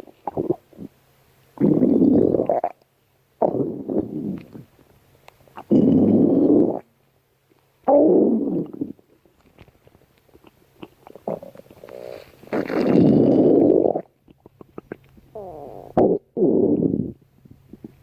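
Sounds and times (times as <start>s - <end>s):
stomach growling and gurgling: 0.0s - 0.9s, 1.6s - 2.8s, 3.4s - 4.8s, 5.6s - 6.9s, 7.9s - 18.0s.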